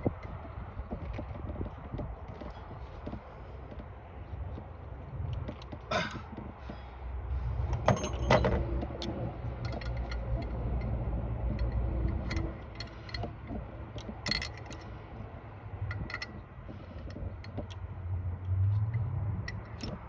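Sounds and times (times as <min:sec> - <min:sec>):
hand tools clicking on metal: 0:07.8 - 0:14.9.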